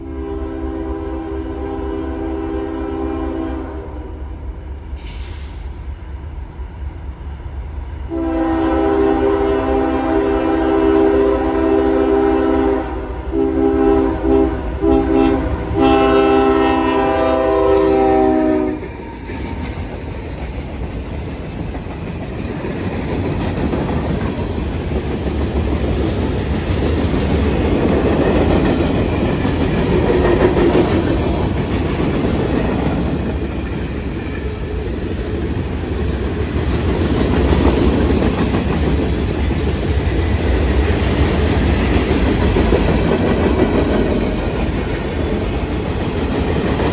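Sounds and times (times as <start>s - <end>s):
train air horn blasts: 0.0s - 4.3s, 8.1s - 18.9s
freight train rumble: 0.0s - 46.9s.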